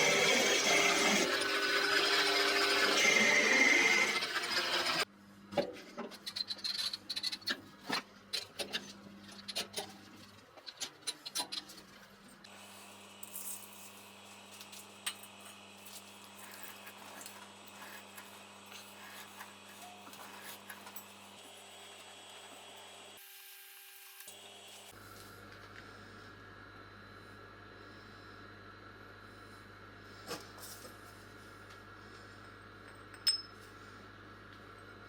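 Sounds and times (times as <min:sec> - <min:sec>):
power drill running: 0:00.0 - 0:05.0.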